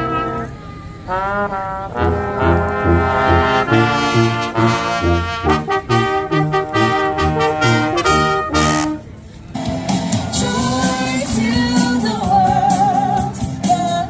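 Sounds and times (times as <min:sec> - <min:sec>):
brass music with trombones and trumpets: 0:00.0 - 0:14.0
repeated bass notes: 0:01.3 - 0:09.0.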